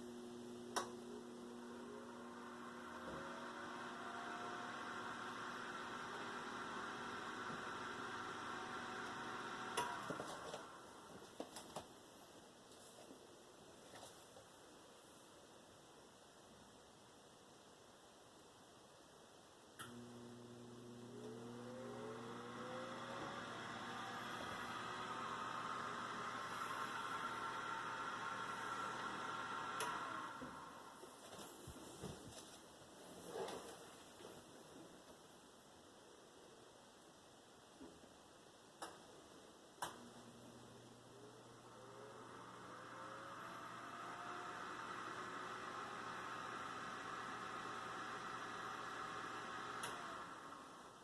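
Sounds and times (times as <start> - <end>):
oven fan motor humming: 0.1 - 11.0, 19.8 - 31.0, 39.8 - 50.9.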